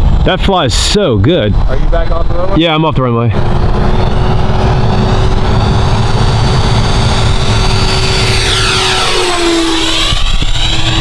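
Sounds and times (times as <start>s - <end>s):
electric ducted fan whining: 3.3s - 11.0s
low rumble: 3.3s - 11.0s.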